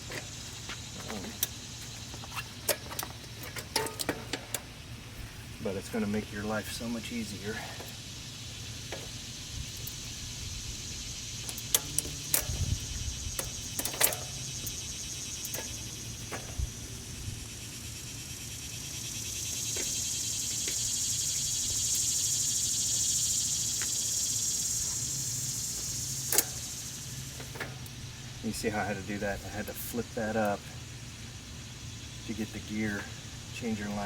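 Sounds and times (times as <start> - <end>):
insect chirring: 0.0 - 34.0
metallic bicycle clicks and clanks: 2.3 - 4.7, 11.4 - 14.8.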